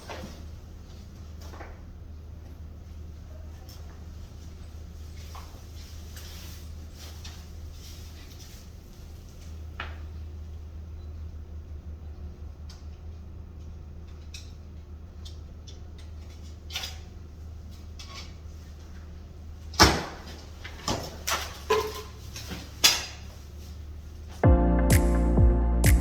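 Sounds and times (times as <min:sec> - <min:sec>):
objects knocking and clunking: 0:19.8 - 0:23.2
steady low hum: 0:24.3 - 0:26.0
music: 0:24.4 - 0:26.0.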